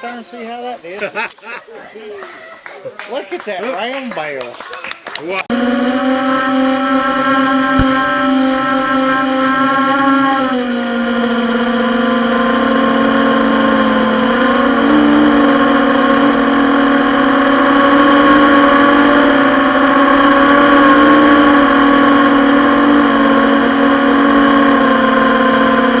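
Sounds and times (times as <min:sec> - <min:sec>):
drone propellers humming: 0:05.3 - 0:26.0.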